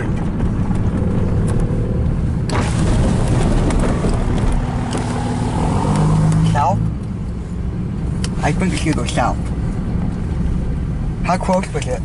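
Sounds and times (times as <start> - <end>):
car rumbling on the move: 0.0 - 12.0.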